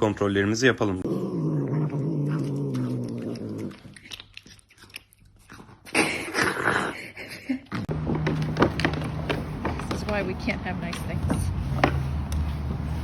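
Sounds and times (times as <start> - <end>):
pet growling: 1.0 - 7.1.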